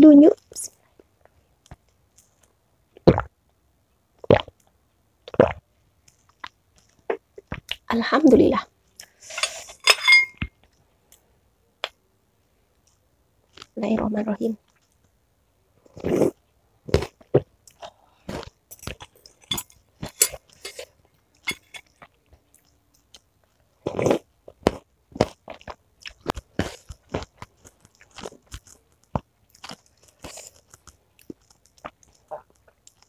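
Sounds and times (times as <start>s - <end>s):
crisp chewing crunches: 15.9s - 33.0s.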